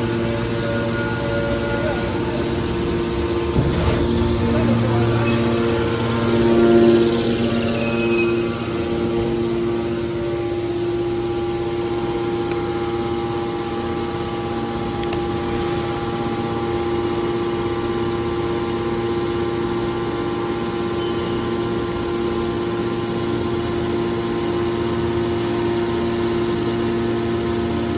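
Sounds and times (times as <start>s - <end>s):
baler machine droning: 0.0s - 16.8s.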